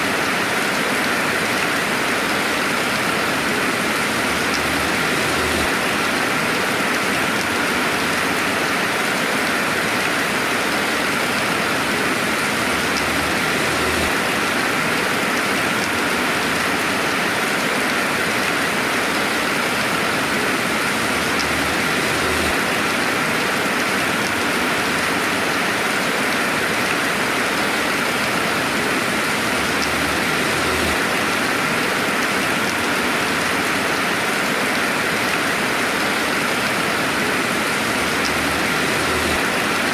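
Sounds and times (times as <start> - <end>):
steady rain hiss: 0.0 - 39.9.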